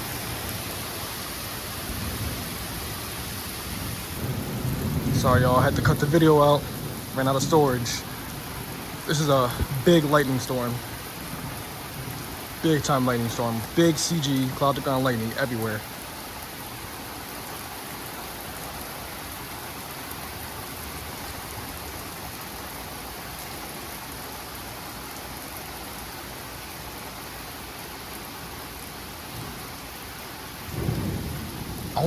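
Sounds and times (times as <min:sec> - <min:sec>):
heavy rain: 0:00.0 - 0:32.0
low rumble of thunder: 0:01.7 - 0:12.6, 0:30.6 - 0:32.0.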